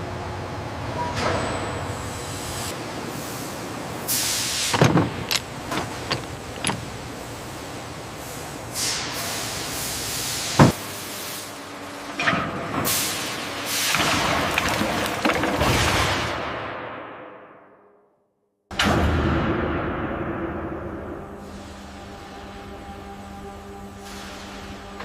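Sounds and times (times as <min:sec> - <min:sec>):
steady background hum: 0:00.0 - 0:16.9, 0:18.8 - 0:25.0
sharp knocks and clicks: 0:04.7 - 0:07.0.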